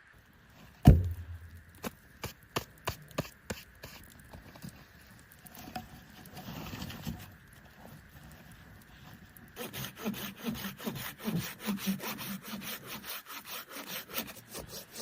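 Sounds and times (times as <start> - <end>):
faint steady hiss: 0.0 - 15.0
rustling: 0.3 - 9.9
heavy thud with low ring: 0.8 - 1.4
sharp knocks: 0.8 - 1.4.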